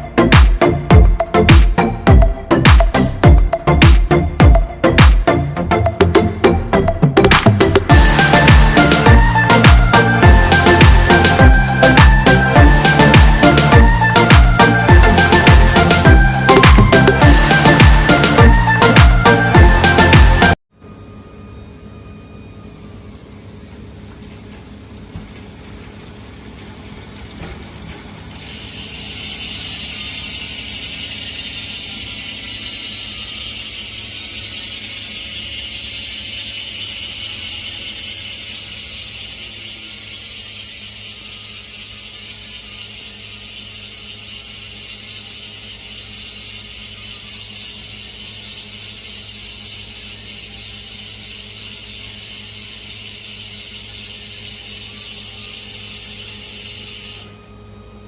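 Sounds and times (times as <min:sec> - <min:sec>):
bicycle freehub ratcheting buzz: 0:00.0 - 0:05.2, 0:07.2 - 0:20.6, 0:22.6 - 0:57.4.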